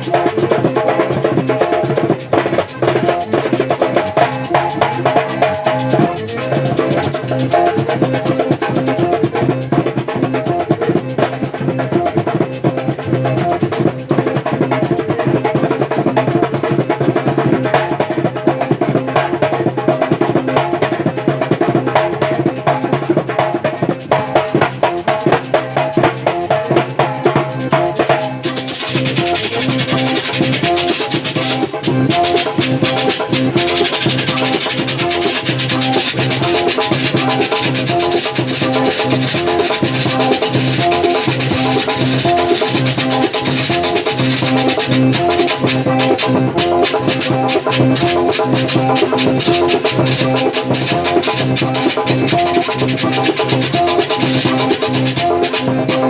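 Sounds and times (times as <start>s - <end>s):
accordion: 0.0s - 56.0s
quick drum beat: 0.0s - 56.0s
high rasping percussion hiss: 27.6s - 56.0s.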